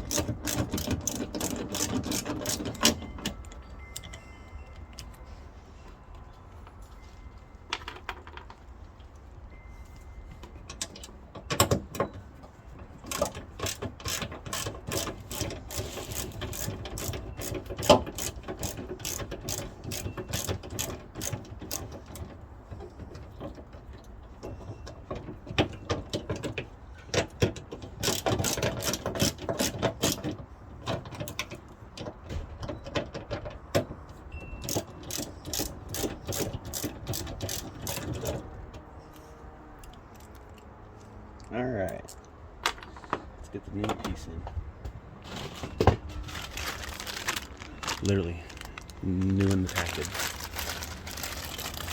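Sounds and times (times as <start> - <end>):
socket ratchet clicking: 0.0 - 3.0.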